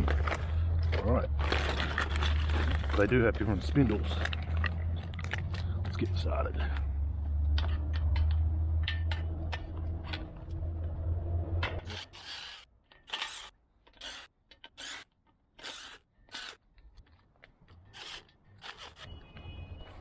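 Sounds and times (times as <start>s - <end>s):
short scraping rasps: 11.8s - 16.6s, 17.8s - 19.1s.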